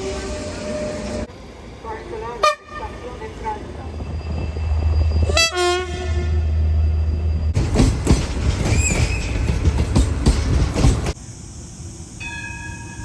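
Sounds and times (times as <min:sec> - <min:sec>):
train rumble: 0:00.0 - 0:13.0
train horn blast: 0:02.4 - 0:03.1, 0:05.3 - 0:06.6
high wheel squeal: 0:06.2 - 0:11.2
wheels clattering over rail joints: 0:07.5 - 0:11.2.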